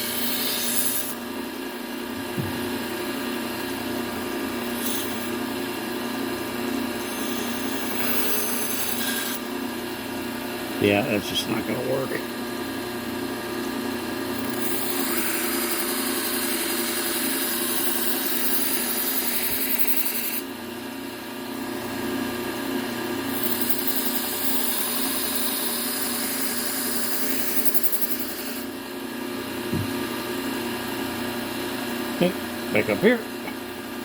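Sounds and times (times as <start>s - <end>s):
belt sander motor hum: 14.3s - 20.5s
knife grinding on sanding belt: 14.7s - 20.4s, 23.3s - 28.6s.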